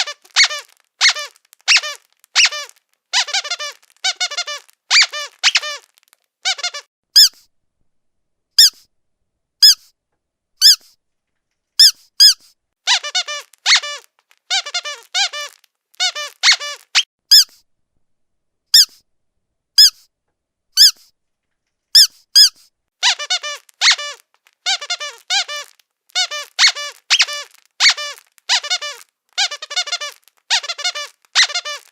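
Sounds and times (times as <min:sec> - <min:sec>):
squeaky dog toy squeaking: 0:00.0 - 0:07.5, 0:08.6 - 0:08.9, 0:09.6 - 0:09.9, 0:10.6 - 0:11.0, 0:11.8 - 0:17.6, 0:18.7 - 0:19.0, 0:19.8 - 0:20.1, 0:20.8 - 0:21.1, 0:21.9 - 0:31.9.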